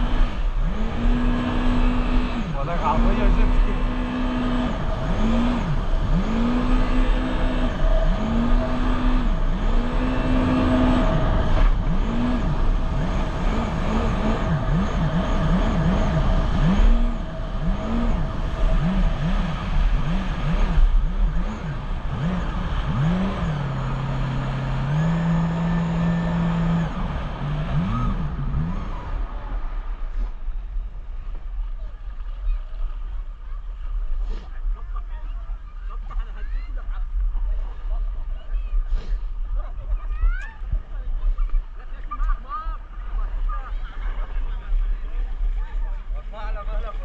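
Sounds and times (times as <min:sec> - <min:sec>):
jet ski engine revving: 0:00.0 - 0:36.4.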